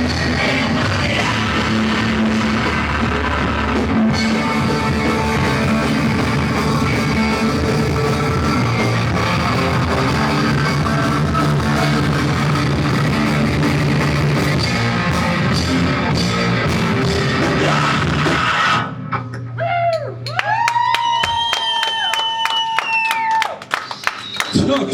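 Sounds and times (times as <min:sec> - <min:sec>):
rock band playing live: 0:00.0 - 0:18.8.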